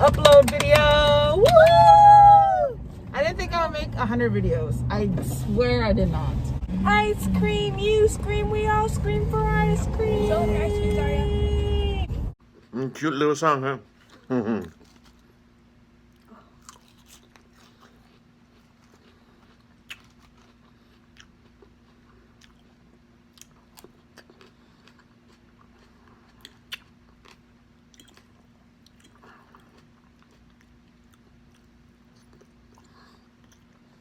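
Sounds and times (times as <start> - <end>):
faint low hum: 0.0 - 34.0
person chewing: 13.9 - 34.0
crisp mouth clicks and crunches: 14.0 - 15.3, 16.1 - 34.0.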